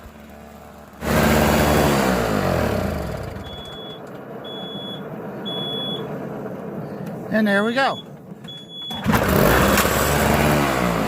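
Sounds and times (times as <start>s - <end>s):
snowblower engine running: 0.0s - 11.0s
short high beeps: 3.4s - 6.1s, 7.9s - 9.0s.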